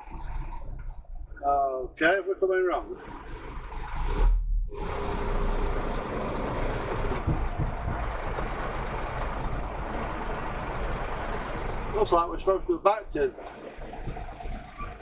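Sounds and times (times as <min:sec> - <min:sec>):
lorry engine rumbling: 0:00.0 - 0:15.0.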